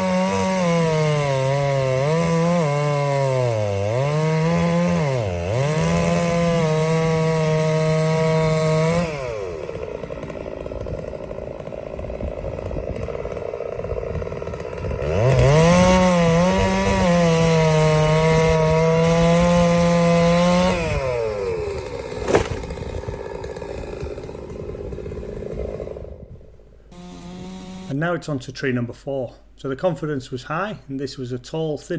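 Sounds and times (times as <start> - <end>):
chainsaw cutting wood: 0.0 - 28.0
sharp crack: 22.0 - 23.2.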